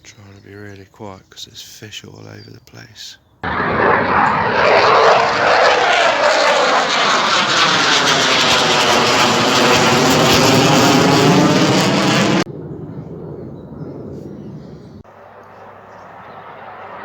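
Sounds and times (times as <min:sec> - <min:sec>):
aircraft flying low overhead: 0:03.4 - 0:17.0.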